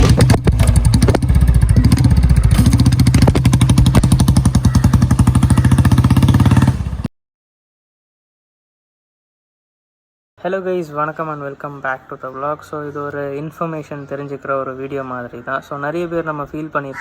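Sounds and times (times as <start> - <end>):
motorcycle engine running: 0.0 - 7.1.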